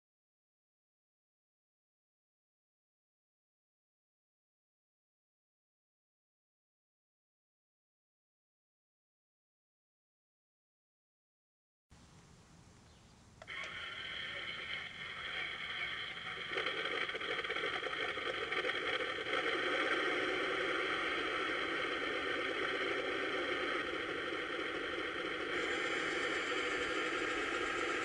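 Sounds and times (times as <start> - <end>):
electronic tank engine sound effect: 13.4 - 28.0.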